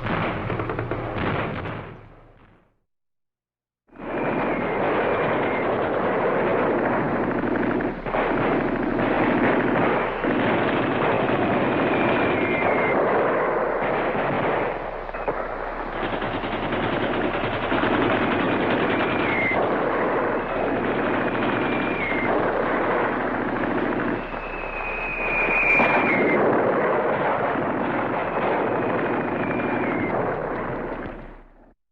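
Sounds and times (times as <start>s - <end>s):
automatic rifle fire in bursts: 0.0s - 2.4s, 4.8s - 31.2s
short falling whistles: 24.2s - 26.4s.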